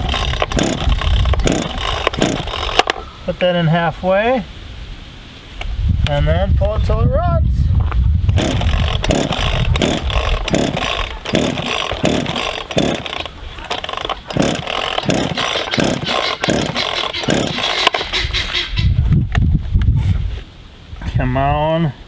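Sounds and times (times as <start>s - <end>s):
chainsaw engine turning over: 0.0s - 3.1s, 8.3s - 18.2s
chainsaw starter cord pulls: 0.0s - 3.1s, 8.3s - 18.2s.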